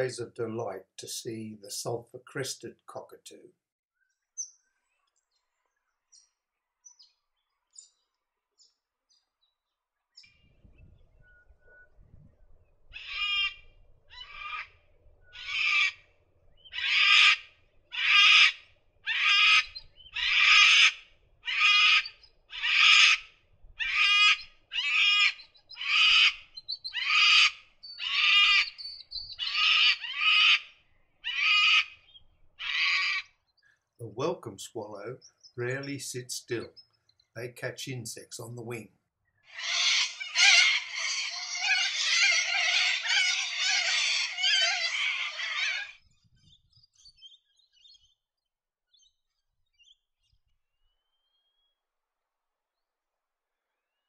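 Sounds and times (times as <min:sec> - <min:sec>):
faint chirps: 0:00.0 - 0:00.4
cockatoo screeching: 0:13.0 - 0:14.7, 0:15.3 - 0:16.0, 0:16.7 - 0:28.8, 0:29.4 - 0:32.0, 0:32.6 - 0:33.3, 0:39.5 - 0:46.0.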